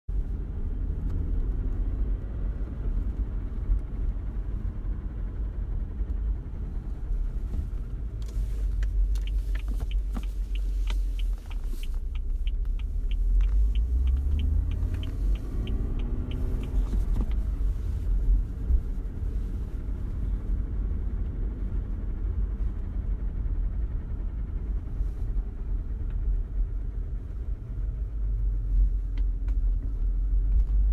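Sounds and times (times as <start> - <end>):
car road and engine rumble: 0.1 - 30.9
sharp even ticking: 8.8 - 17.2.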